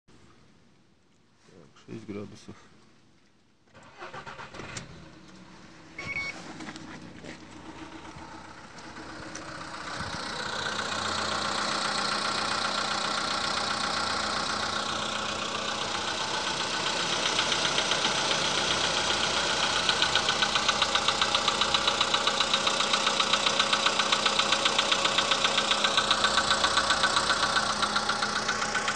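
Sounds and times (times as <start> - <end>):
car engine running: 3.8 - 28.9
rhythmic engine knock: 8.1 - 28.9.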